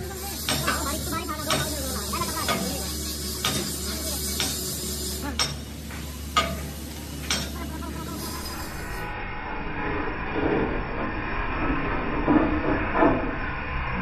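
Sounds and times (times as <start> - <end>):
sharp metallic knocks: 0.0 - 7.6
arc welding crackling sizzle: 0.0 - 9.2
low hum: 0.0 - 14.0.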